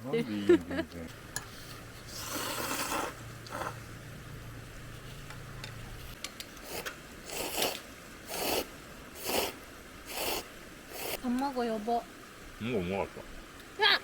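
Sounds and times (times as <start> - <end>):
person slurping food: 2.1 - 3.8, 6.6 - 11.2.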